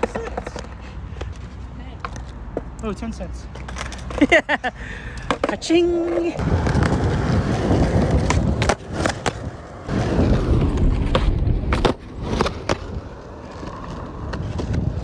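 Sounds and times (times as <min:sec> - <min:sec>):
skateboard clacks: 0:00.0 - 0:01.4, 0:05.1 - 0:15.0
skateboard wheels rolling: 0:00.0 - 0:02.8, 0:03.5 - 0:15.0.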